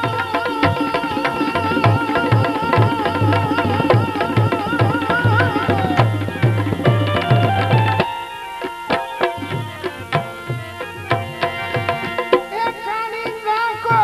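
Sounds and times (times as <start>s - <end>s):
tabla beat: 0.0s - 14.0s
wavering melodic lead: 3.3s - 12.8s.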